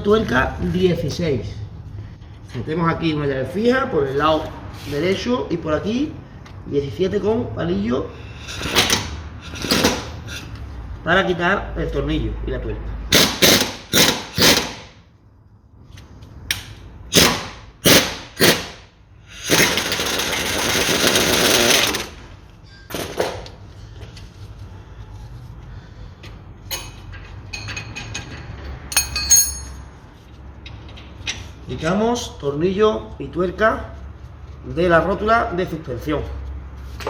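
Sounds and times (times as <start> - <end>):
power tool running: 13.1 - 14.8, 19.4 - 22.2
light metal clinks: 26.7 - 28.3, 28.9 - 29.9
sharp metallic knocks: 26.7 - 29.9.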